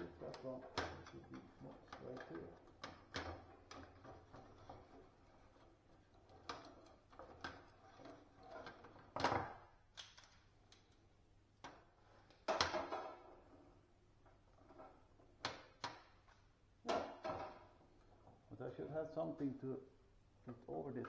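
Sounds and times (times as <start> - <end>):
fittings clicking and knocking: 0.0 - 9.2.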